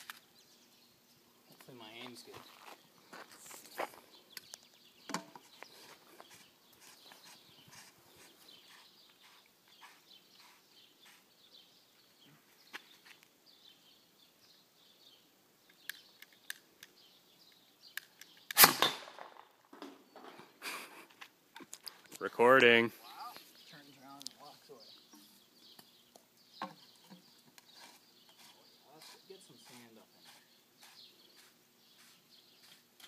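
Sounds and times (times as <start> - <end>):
potato gun bang: 18.6 - 19.4.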